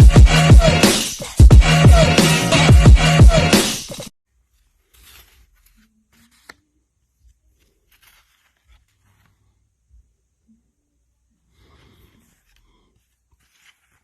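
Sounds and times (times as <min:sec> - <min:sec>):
paper tickets rustling: 0:04.6 - 0:06.8, 0:07.5 - 0:09.4, 0:13.2 - 0:14.0.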